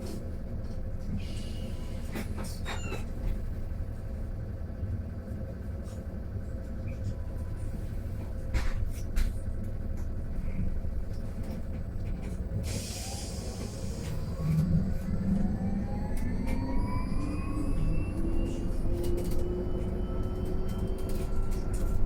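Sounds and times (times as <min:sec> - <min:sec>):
bus ride rumble: 0:00.0 - 0:22.0
electric motor whine rising: 0:14.1 - 0:20.7.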